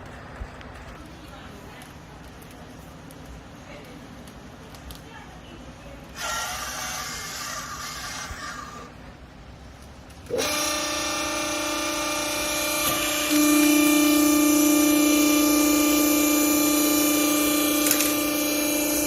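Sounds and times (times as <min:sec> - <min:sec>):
baler motor humming: 0:10.2 - 0:19.0.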